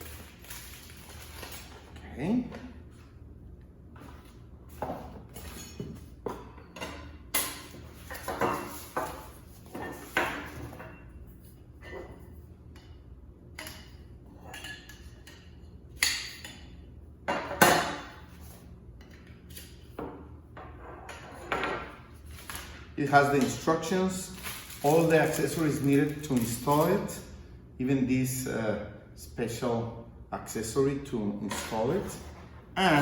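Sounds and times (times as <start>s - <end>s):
packaging rustling: 0.0s - 1.9s, 24.3s - 26.8s.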